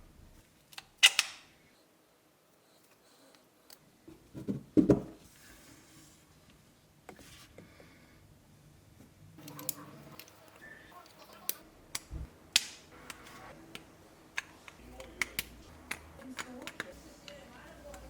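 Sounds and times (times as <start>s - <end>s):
plastic clicks and snaps: 11.3s - 17.0s.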